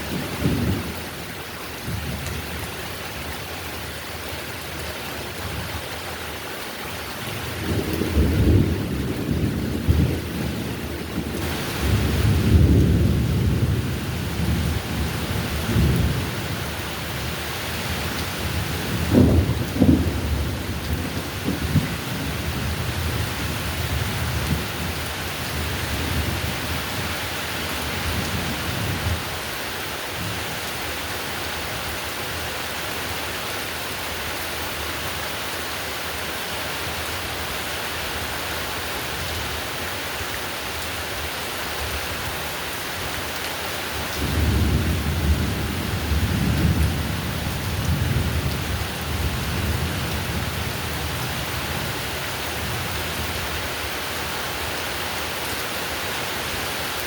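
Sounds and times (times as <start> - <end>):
heavy rain falling: 0.0 - 57.0
deep rolling thunder: 7.6 - 16.4, 18.5 - 24.8, 44.2 - 50.6.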